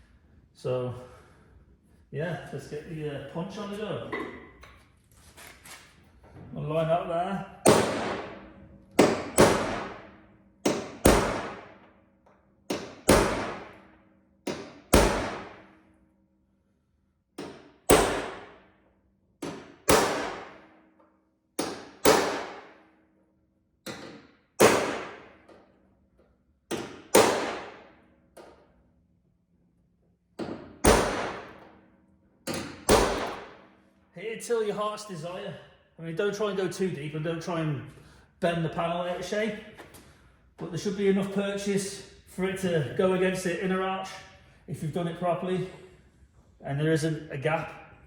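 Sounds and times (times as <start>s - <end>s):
hammer striking punch on sheet metal: 7.6s - 12.0s, 12.7s - 15.9s, 17.4s - 18.8s, 19.4s - 20.9s, 21.6s - 23.0s, 23.9s - 25.6s, 26.7s - 28.6s, 30.4s - 31.8s, 32.5s - 33.7s.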